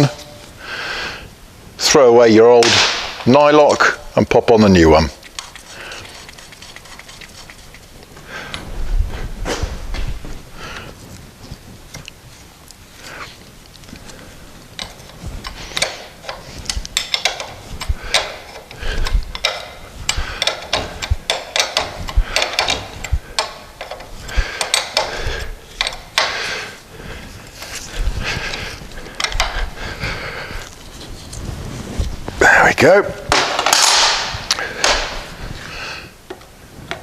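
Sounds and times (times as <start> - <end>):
ratchet spanner clicking: 14.8 - 25.1, 25.8 - 26.3.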